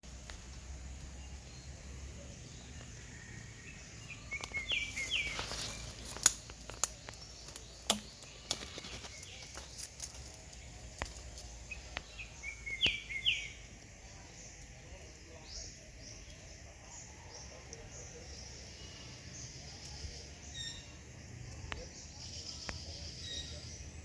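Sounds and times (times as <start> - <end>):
low steady background noise: 0.0 - 24.0
bird chirping: 0.1 - 24.0
sharp clicks and crackles: 4.4 - 12.1.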